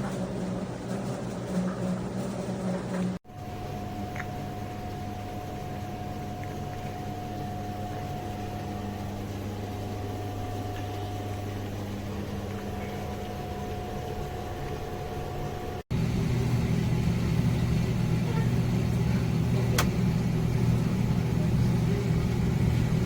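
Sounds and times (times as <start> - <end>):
thin constant whine: 0.0 - 19.7
tumble dryer humming: 0.0 - 23.0.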